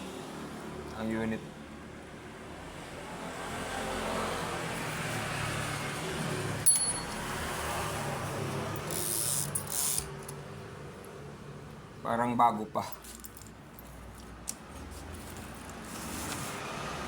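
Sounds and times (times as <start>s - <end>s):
sharp metallic click with ring: 6.7s - 7.2s.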